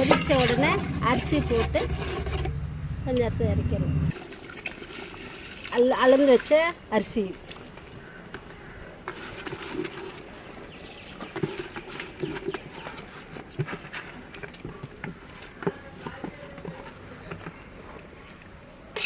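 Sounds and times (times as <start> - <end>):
metal utensils clinking against pot: 0.0 - 2.5.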